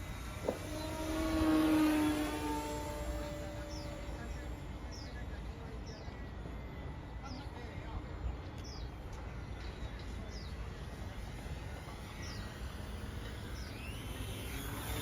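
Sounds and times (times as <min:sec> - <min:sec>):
low outdoor rumble: 0:00.0 - 0:08.3.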